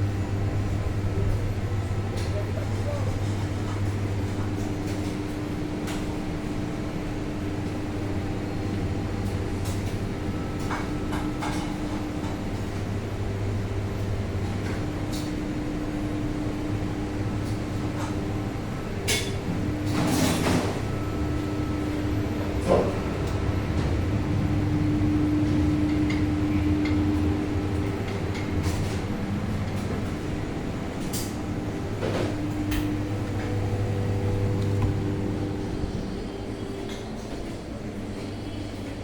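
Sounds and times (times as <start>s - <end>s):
low hum of kitchen equipment: 0.0s - 39.0s.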